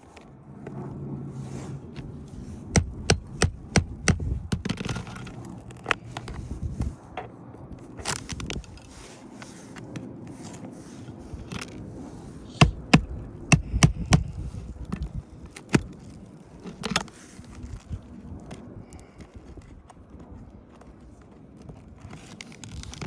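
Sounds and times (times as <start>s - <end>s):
metal scraper scraping shingles: 2.0s - 6.5s, 12.4s - 17.8s
sharp knocks: 2.7s - 4.9s, 12.6s - 14.3s.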